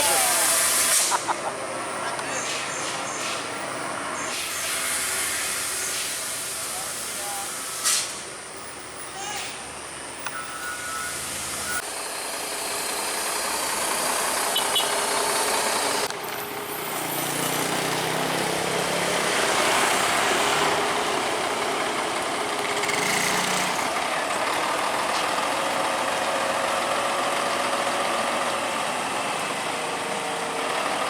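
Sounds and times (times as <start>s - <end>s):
road noise: 0.0s - 31.0s
heavy truck engine running: 10.1s - 31.0s.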